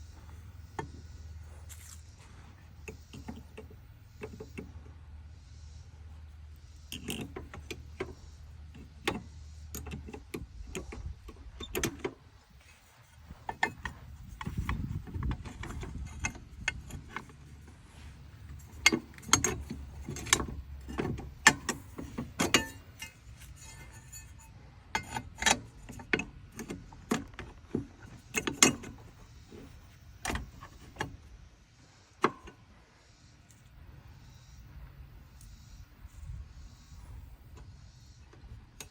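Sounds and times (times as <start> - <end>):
metal tools clinking and knocking: 18.5 - 27.2.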